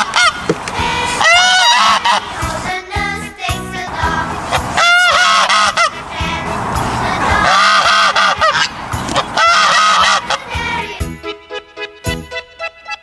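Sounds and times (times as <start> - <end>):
geese honking: 0.0 - 2.7, 3.8 - 11.0
children's song backing track: 0.0 - 13.0.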